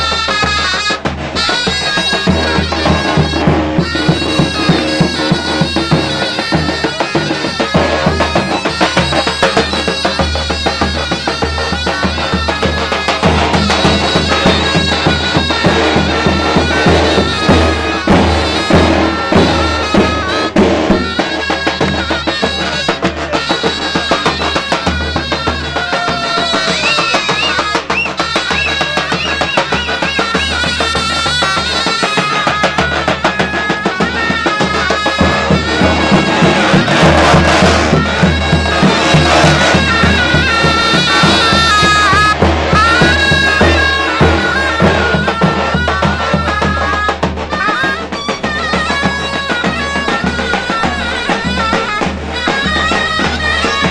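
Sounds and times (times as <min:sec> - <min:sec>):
reedy shawm melody: 0:00.0 - 0:53.9
bass drum beating quick rhythm: 0:23.3 - 0:50.4
bass drum beats: 0:34.6 - 0:46.7.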